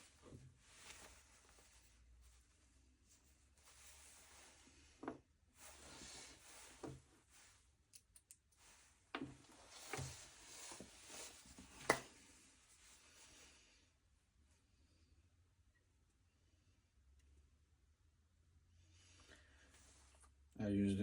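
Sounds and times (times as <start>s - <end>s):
faint rustling: 0.0s - 7.7s, 8.6s - 13.8s.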